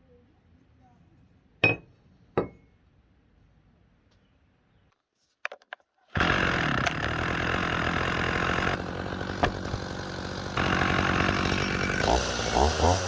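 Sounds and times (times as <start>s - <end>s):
power tool running: 6.2s - 13.0s.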